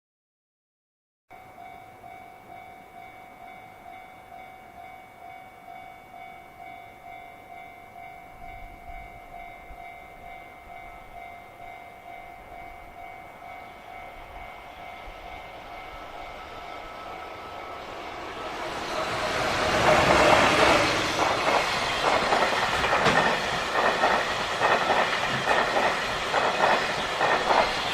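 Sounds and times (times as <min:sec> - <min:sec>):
train rumble: 0:12.1 - 0:27.9.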